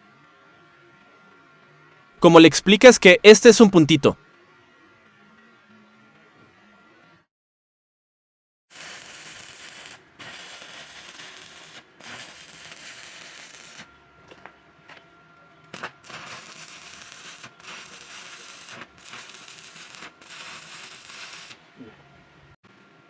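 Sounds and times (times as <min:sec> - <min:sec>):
sharp welding pops: 0:08.7 - 0:14.5, 0:15.7 - 0:21.6
arc welding crackle: 0:08.7 - 0:15.0, 0:15.6 - 0:21.9.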